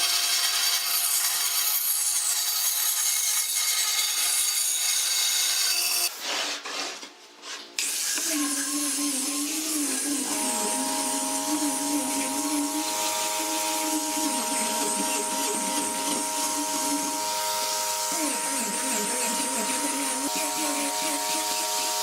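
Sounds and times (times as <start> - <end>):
power tool whining against wood: 8.1 - 22.0.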